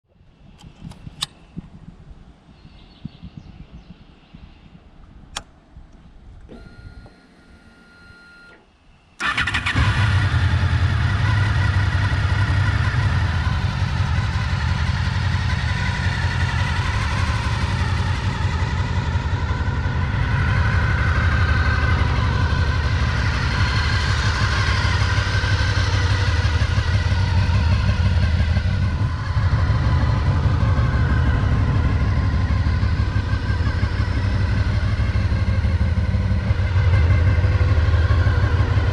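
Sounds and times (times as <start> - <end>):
motorcycle engine idling: 9.2 - 38.9.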